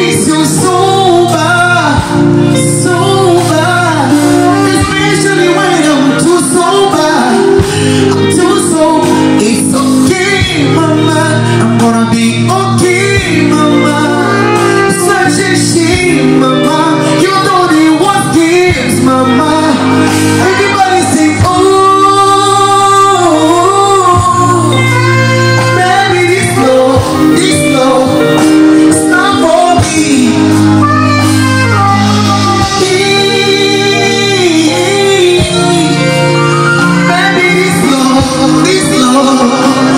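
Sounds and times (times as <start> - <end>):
live band music: 0.0 - 39.9
person singing: 0.0 - 39.9.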